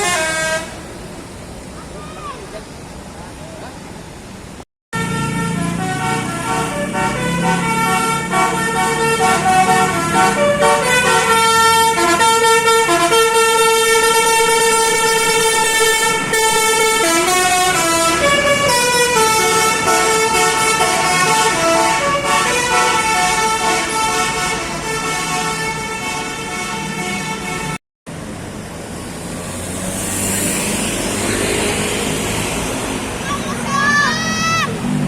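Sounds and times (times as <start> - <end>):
musical bus horn melody: 0.0 - 0.8, 5.0 - 27.8.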